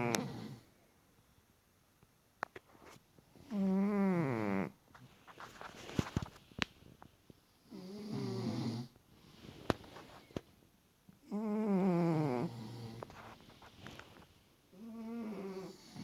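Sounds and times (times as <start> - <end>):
person snoring: 7.7 - 8.9, 11.3 - 13.0, 14.8 - 16.0.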